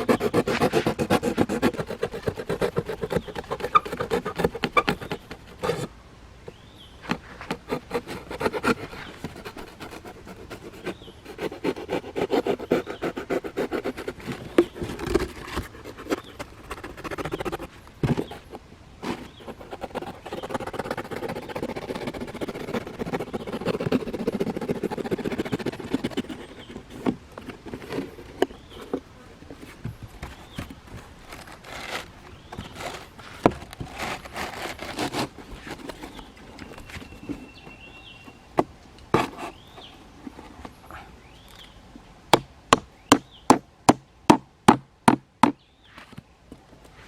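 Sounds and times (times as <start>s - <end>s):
knocks and rustling: 14.2s - 19.4s, 25.9s - 37.8s.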